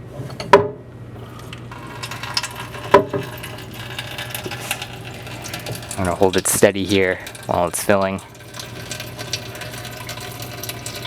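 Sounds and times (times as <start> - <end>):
hollow plastic knocks: 0.4 - 0.8
water pouring into plastic tank: 1.2 - 11.0.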